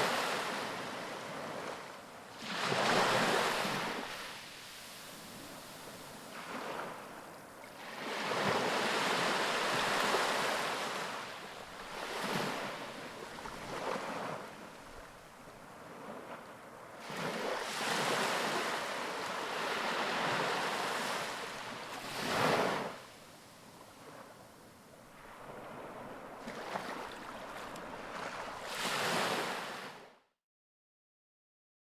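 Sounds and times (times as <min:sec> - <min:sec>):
ocean waves breaking: 0:07.8 - 0:23.0, 0:25.1 - 0:30.0.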